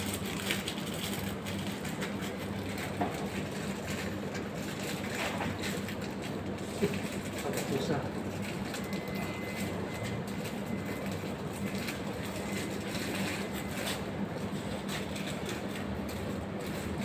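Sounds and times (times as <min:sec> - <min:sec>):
low mechanical hum: 0:00.0 - 0:17.0.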